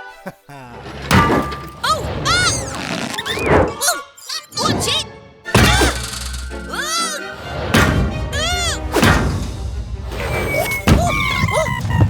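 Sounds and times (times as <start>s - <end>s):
background music: 0.0s - 12.0s
cartoon tyre bouncing thud: 5.6s - 6.7s, 10.6s - 12.0s
person exclaiming: 6.7s - 7.3s.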